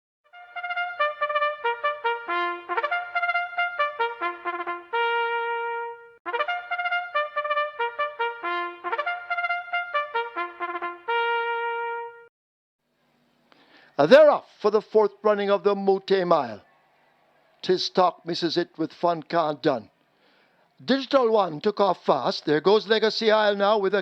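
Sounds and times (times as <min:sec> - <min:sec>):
solo trumpet fanfare: 0:00.3 - 0:12.3.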